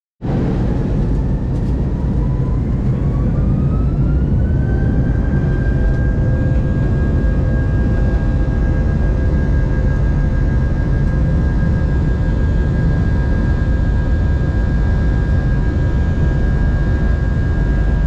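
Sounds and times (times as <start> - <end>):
jet engines spooling up: 0.3 - 10.2.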